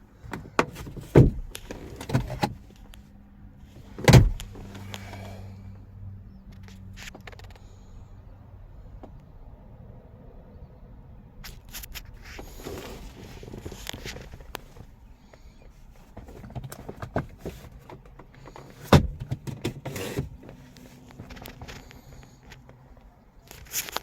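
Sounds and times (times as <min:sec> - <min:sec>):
clicks and knocks on car body: 0:00.3 - 0:02.6, 0:04.0 - 0:04.6, 0:16.2 - 0:20.3.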